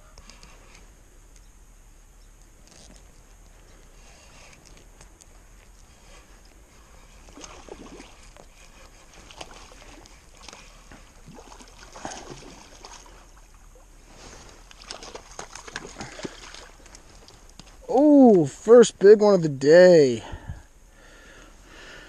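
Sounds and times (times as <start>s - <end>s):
water splashing and sloshing: 2.6s - 18.0s.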